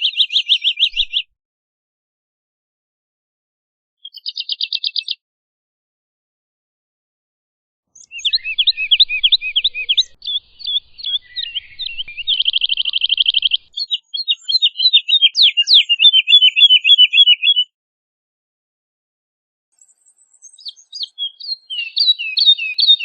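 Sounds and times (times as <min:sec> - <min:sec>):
bird trill: 0:00.0 - 0:01.3, 0:04.0 - 0:05.2, 0:08.0 - 0:17.7, 0:19.8 - 0:23.0
woodlark singing whistled notes: 0:00.0 - 0:01.3, 0:04.0 - 0:05.2, 0:08.0 - 0:17.7, 0:19.8 - 0:23.0.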